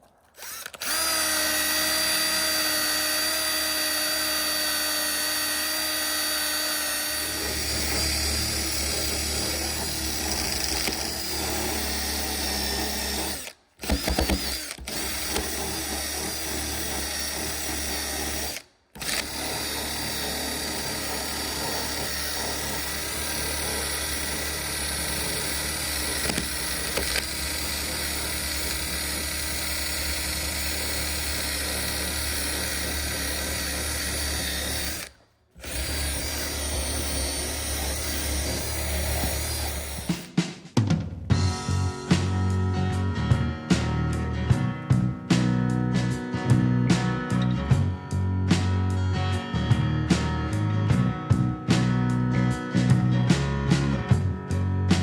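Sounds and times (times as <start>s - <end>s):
power tool whining: 0.3s - 40.3s.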